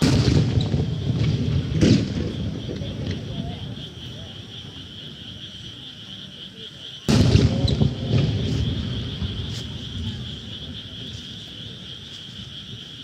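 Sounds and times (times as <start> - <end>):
smaller firework bang: 0.0 - 3.2, 7.1 - 8.6
firework shell booming: 0.0 - 3.4, 7.1 - 10.1
rolling rumble: 0.0 - 3.9, 7.1 - 11.2.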